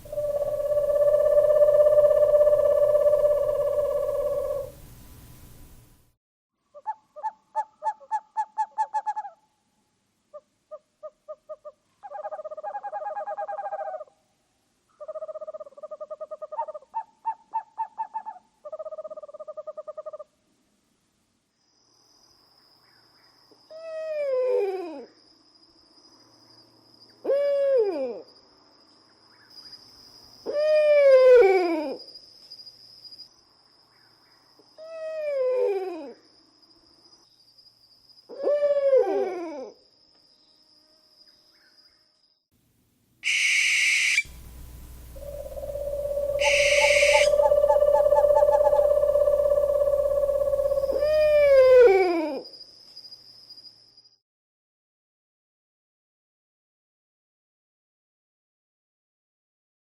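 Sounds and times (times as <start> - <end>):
owl trilling: 0.0 - 4.9, 43.2 - 52.2
steady high-pitched whine: 0.0 - 6.1, 44.2 - 51.6
owl calls sliding down: 43.2 - 51.6.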